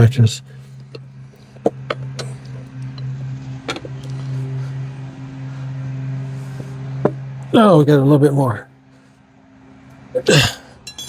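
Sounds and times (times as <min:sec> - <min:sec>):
steady low hum: 0:00.0 - 0:11.0
metal tire tools clicking: 0:10.8 - 0:11.0.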